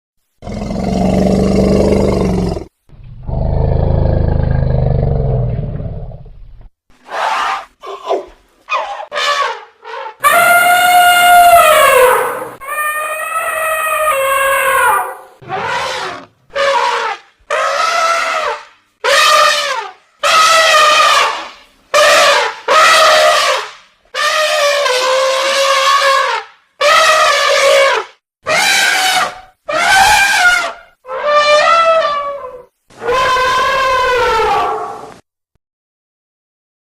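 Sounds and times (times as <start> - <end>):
elephant roaring: 0.4 - 6.2
elephant trumpeting: 7.0 - 35.1.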